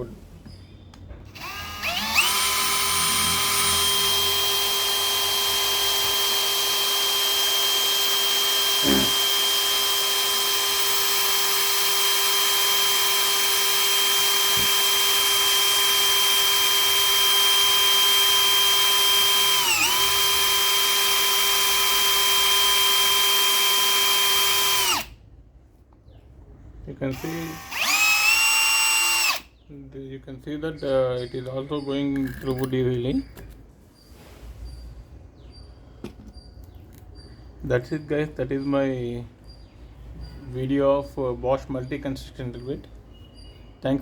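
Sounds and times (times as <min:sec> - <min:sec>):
electric drill boring into wood: 0:01.3 - 0:25.1, 0:27.1 - 0:29.5.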